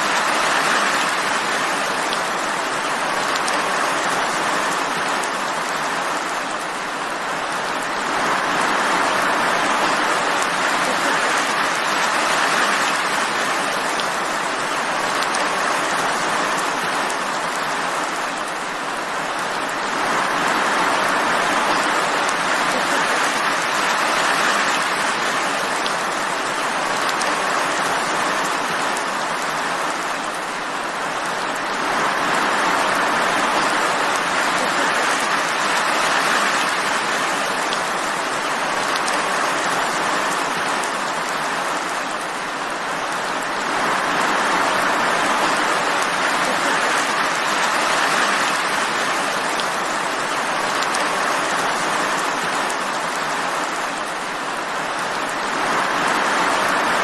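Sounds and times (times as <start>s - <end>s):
steady rain hiss: 0.0s - 57.0s.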